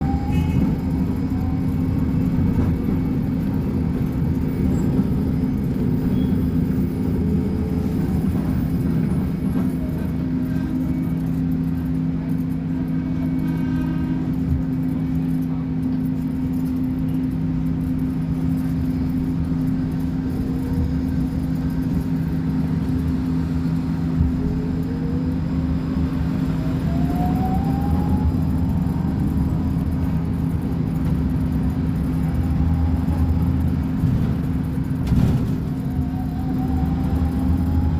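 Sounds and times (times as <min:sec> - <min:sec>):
diesel engine running: 0:00.0 - 0:37.9
whine rising in pitch: 0:24.2 - 0:30.7.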